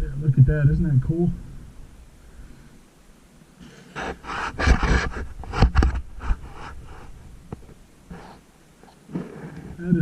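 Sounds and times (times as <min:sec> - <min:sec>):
man breathing heavily into microphone: 0:02.1 - 0:03.0.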